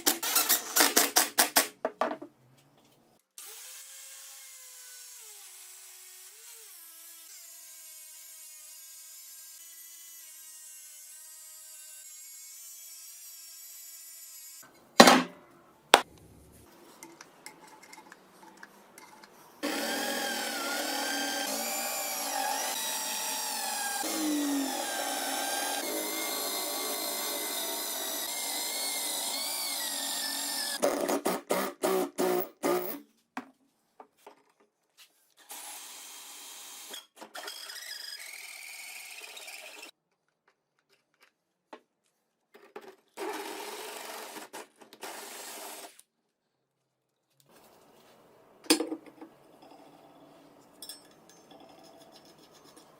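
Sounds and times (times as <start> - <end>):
power tool running under load: 19.6 - 30.8.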